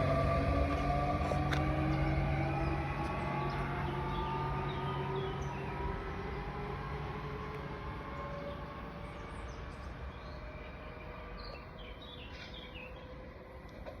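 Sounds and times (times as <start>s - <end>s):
electric train running: 0.0s - 14.0s
bird chirps: 9.2s - 13.1s.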